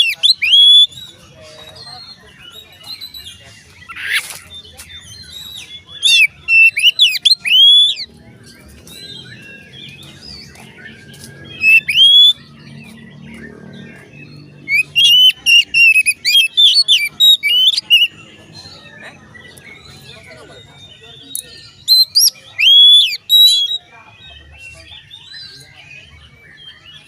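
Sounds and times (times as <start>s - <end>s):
bird singing whistled phrases: 0.0s - 8.1s, 8.9s - 12.6s, 13.7s - 18.8s, 20.8s - 27.0s.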